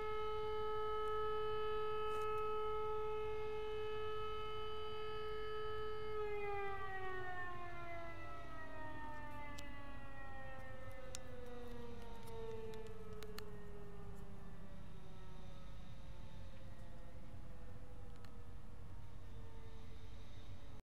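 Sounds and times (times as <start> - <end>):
siren-like wailing tone: 0.0 - 20.6
faint clicks: 18.0 - 18.4.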